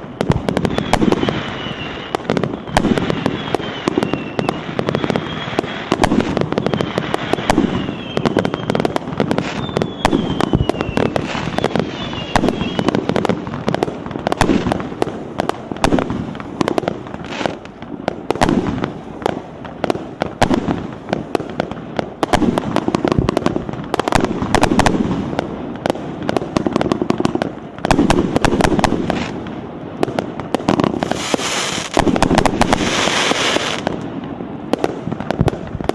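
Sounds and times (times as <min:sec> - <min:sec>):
firework whistles: 0:00.0 - 0:15.0, 0:15.8 - 0:19.2, 0:30.6 - 0:35.9
fireworks barrage with crackling: 0:00.0 - 0:35.9.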